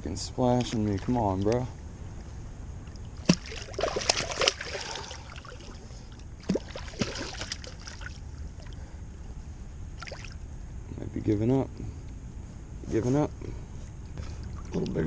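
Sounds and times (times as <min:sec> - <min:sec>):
steady low rumble: 0:00.0 - 0:15.0
fish thrashing and splashing in water: 0:03.1 - 0:08.8, 0:10.0 - 0:10.4.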